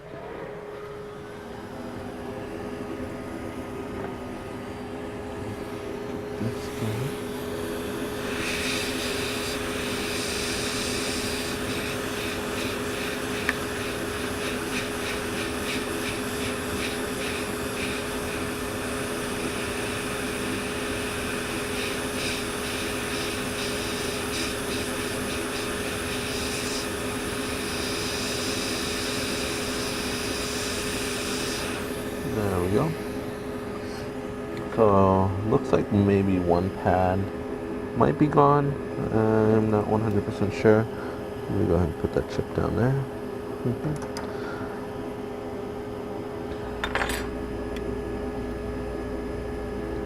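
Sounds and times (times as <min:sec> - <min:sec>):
blown hot air rush: 0:00.0 - 0:34.4
low fan hum: 0:00.0 - 0:50.0.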